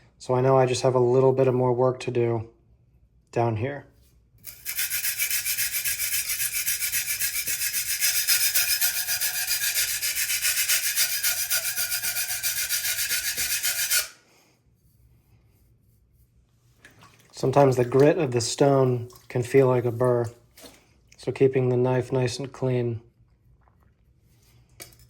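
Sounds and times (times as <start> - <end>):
knife scraping on whetstone: 4.4 - 14.2.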